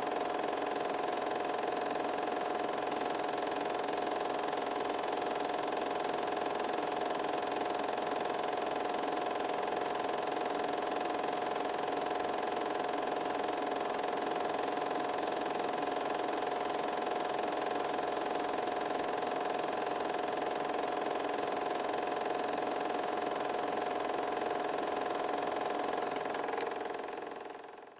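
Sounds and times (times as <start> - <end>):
film projector whirring: 0.0 - 27.9.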